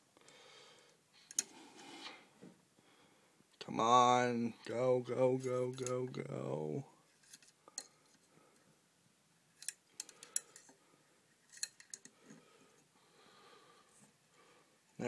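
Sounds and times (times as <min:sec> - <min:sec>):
small objects clicking and tapping: 0:09.6 - 0:10.8, 0:11.5 - 0:12.2.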